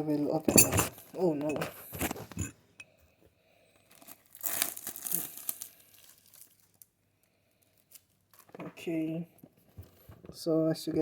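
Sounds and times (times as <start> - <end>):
plastic wrapping tearing and crinkling: 3.9 - 7.0, 7.6 - 8.6.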